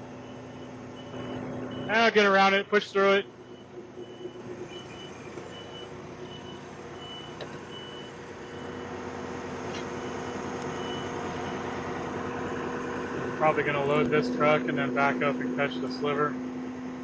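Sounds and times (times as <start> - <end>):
reversing alarm beeping: 0.0 - 13.6
diesel engine running: 0.0 - 17.0.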